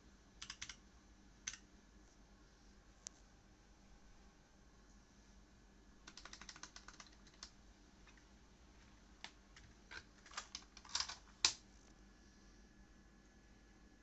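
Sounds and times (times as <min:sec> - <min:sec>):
mechanical keyboard typing: 0:00.4 - 0:00.8, 0:01.4 - 0:01.6, 0:06.1 - 0:08.2, 0:09.2 - 0:11.6.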